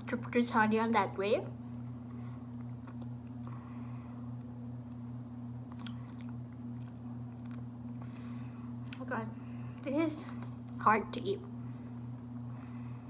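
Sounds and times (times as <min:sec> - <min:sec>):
low hum: 0:00.0 - 0:13.0
sticky chewing sounds: 0:01.8 - 0:03.4, 0:04.4 - 0:07.8.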